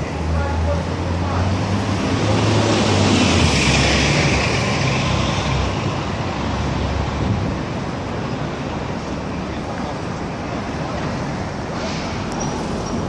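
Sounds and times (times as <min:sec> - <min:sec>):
traffic rumble: 0:00.0 - 0:13.0.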